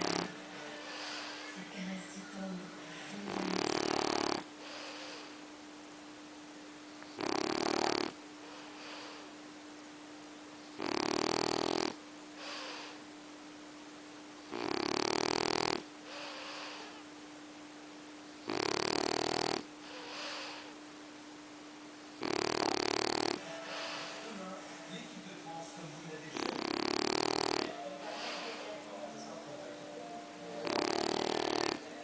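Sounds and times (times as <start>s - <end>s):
pet snoring: 0.0s - 1.5s, 3.2s - 5.4s, 7.0s - 9.3s, 10.7s - 13.0s, 14.4s - 17.0s, 18.4s - 20.8s, 22.2s - 24.3s, 26.4s - 28.9s, 30.5s - 32.0s
soft breath: 0.6s - 1.6s, 4.6s - 5.4s, 8.4s - 9.4s, 16.1s - 17.1s, 19.8s - 20.8s, 23.4s - 25.0s, 28.0s - 28.9s.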